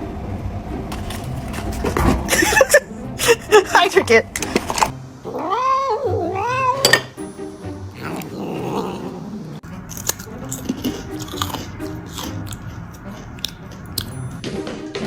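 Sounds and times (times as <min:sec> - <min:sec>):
background music: 0:00.4 - 0:15.0
cat crunching food: 0:00.9 - 0:02.0, 0:09.6 - 0:14.4
cat meowing: 0:05.2 - 0:07.1.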